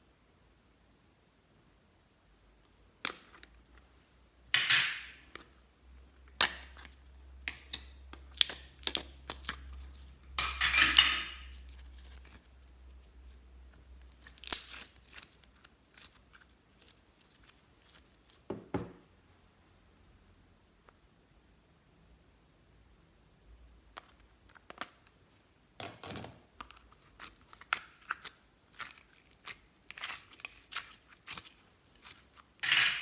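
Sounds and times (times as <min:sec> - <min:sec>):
clicks taps and crackles: 0:02.6 - 0:03.9, 0:06.2 - 0:12.8, 0:13.7 - 0:16.2, 0:23.9 - 0:25.2
hands working slime: 0:02.6 - 0:04.0, 0:04.8 - 0:18.9, 0:23.9 - 0:33.0.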